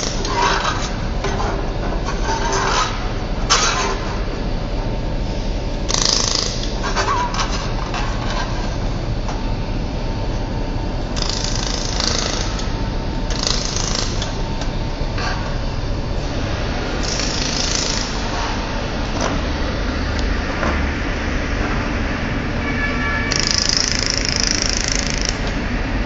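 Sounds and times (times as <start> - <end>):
welding machine humming: 0.0 - 4.3, 5.2 - 9.1, 10.1 - 20.4, 23.2 - 25.6.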